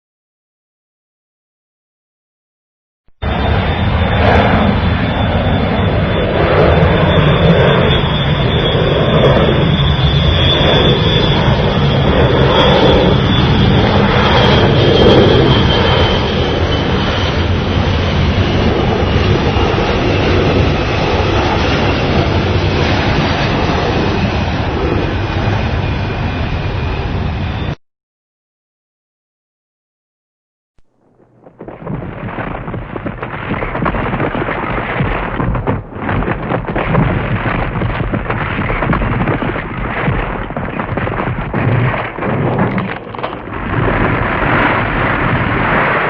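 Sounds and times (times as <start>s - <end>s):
high whine falling in pitch: 3.1s - 17.8s.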